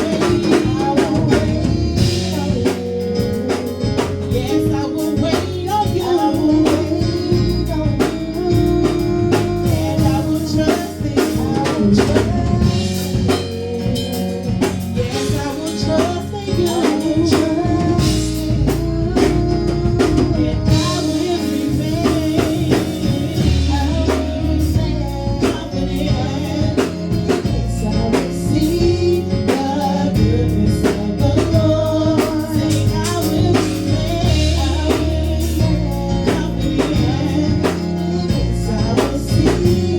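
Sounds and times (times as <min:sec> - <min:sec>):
gospel band playing: 0:00.0 - 0:39.9
person singing: 0:00.0 - 0:39.9.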